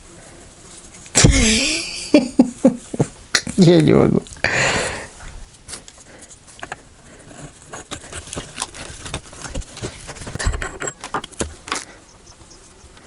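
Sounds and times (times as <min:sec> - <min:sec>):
hands rustling plumbing flax: 0:05.1 - 0:12.0.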